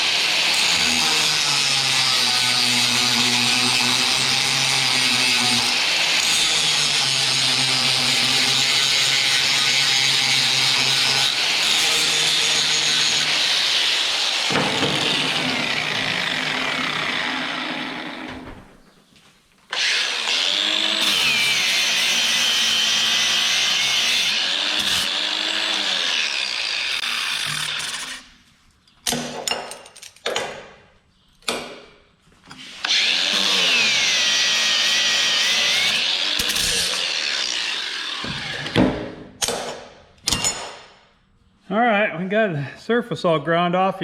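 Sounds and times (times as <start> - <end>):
grinder grinding metal: 0.0 - 18.6, 19.7 - 28.3, 32.5 - 38.8.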